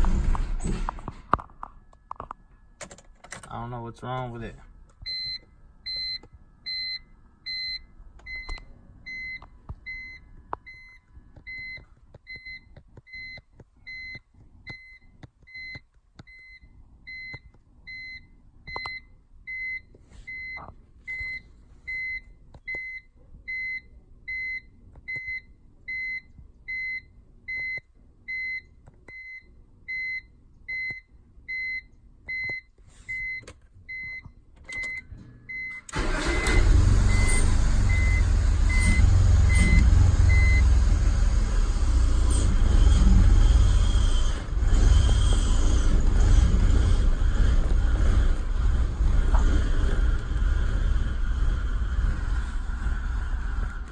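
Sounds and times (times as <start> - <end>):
electronic beeper beeping: 36.4 - 40.7.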